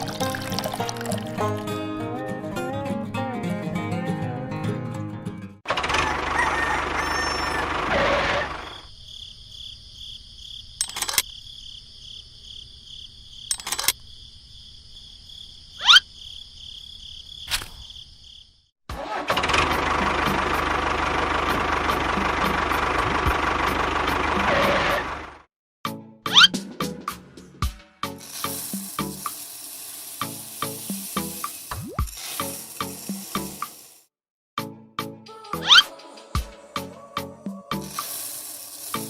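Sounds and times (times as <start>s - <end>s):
small electric motor whining: 37.9s - 39.0s.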